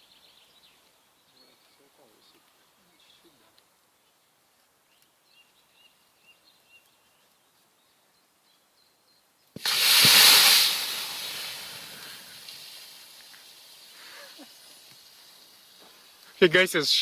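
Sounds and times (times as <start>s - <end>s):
fire flaring with whooshing hiss: 9.6s - 16.5s.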